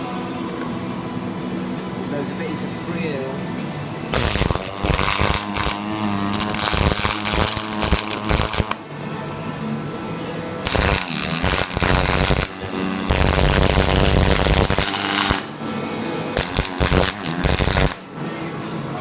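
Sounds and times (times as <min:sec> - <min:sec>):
welding arc crackling: 0:04.1 - 0:08.8, 0:10.6 - 0:15.5, 0:16.4 - 0:18.0.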